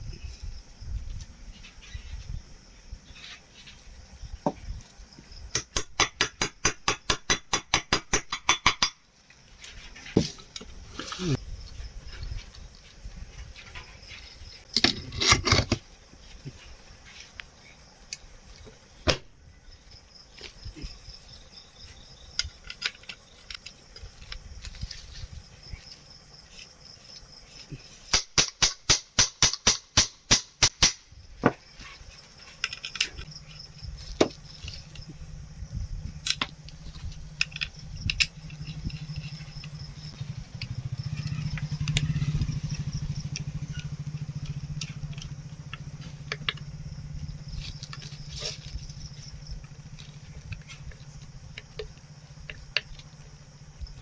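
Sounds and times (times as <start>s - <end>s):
crickets chirping: 0.0s - 54.0s.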